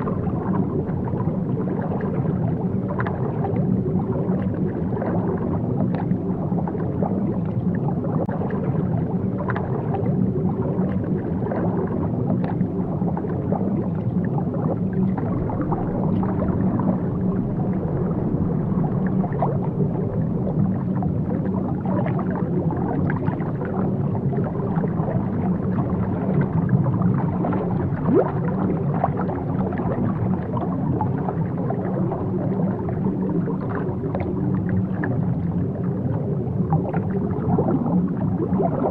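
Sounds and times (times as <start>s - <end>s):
muffled underwater rumble: 0.0s - 38.9s.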